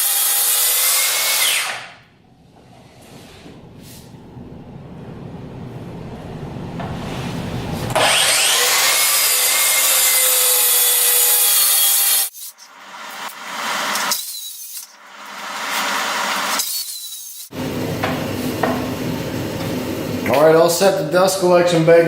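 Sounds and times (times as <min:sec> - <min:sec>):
track saw cutting board: 0:00.0 - 0:02.0, 0:07.8 - 0:18.8.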